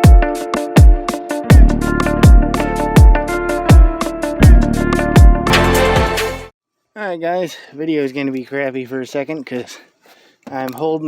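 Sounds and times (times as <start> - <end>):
electronic music: 0.0 - 6.5
sustained synth tones: 1.5 - 5.5
deep bass kick: 1.5 - 5.7.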